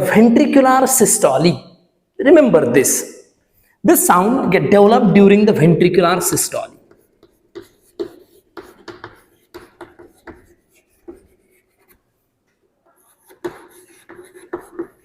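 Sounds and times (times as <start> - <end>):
writing strokes on a board: 6.8 - 15.0.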